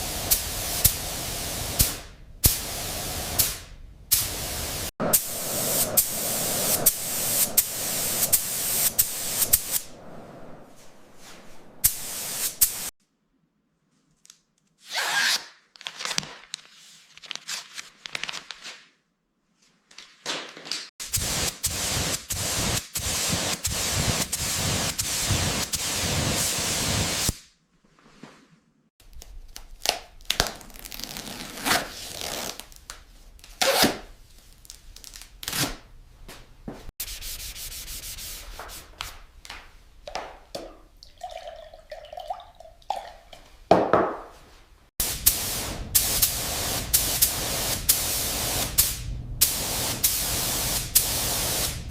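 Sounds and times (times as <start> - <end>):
spray hissing: 0.0 - 9.9, 11.8 - 12.9, 21.1 - 27.3, 45.0 - 51.9.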